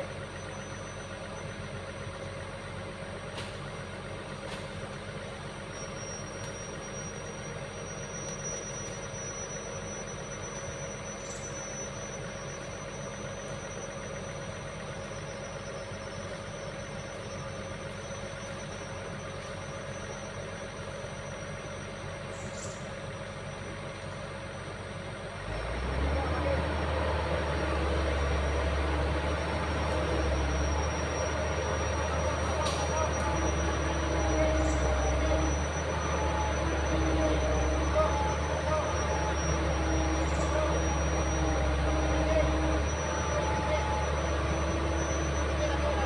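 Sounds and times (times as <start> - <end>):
heavy machine engine running: 0.0 - 46.0
thin high whine: 29.4 - 46.0.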